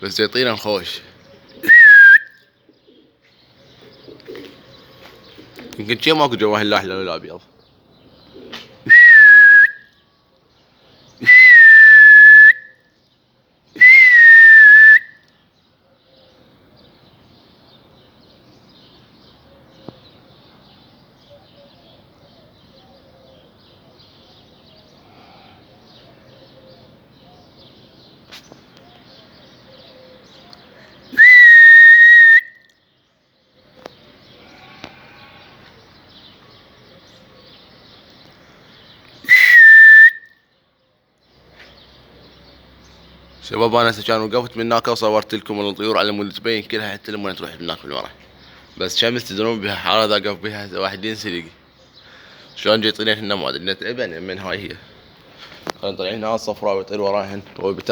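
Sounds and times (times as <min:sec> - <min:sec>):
shrill high whistling: 0:01.6 - 0:02.4, 0:08.9 - 0:10.0, 0:11.2 - 0:12.8, 0:13.8 - 0:15.3, 0:31.1 - 0:32.7, 0:39.2 - 0:40.4.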